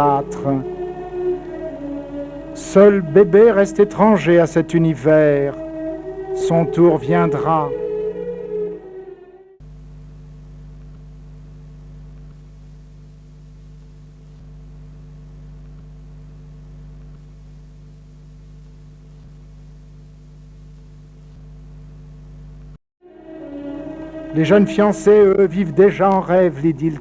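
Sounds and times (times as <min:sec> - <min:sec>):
electrical hum: 0:00.0 - 0:27.0.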